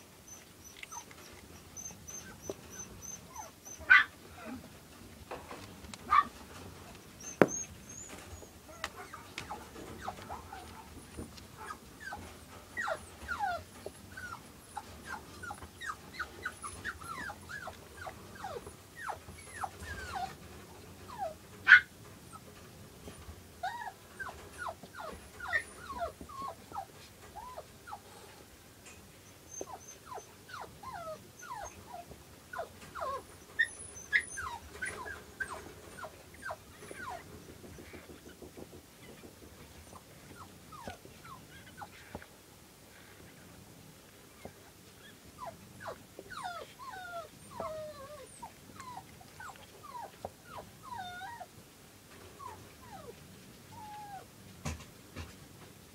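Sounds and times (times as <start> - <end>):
puppies squeaking and whimpering: 0.2 - 4.1, 7.0 - 10.8, 11.6 - 20.4, 23.6 - 28.1, 29.2 - 42.2, 44.4 - 51.5
puppy crying: 32.6 - 37.3.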